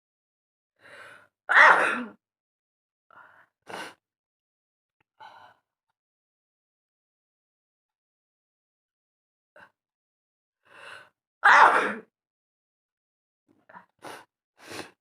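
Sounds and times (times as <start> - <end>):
woman sneezing: 1.5 - 2.2.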